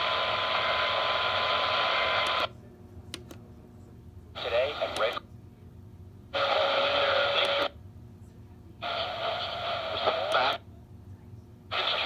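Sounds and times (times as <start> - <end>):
radio hiss: 4.4 - 5.2, 6.4 - 7.7, 8.8 - 10.6, 11.7 - 12.0.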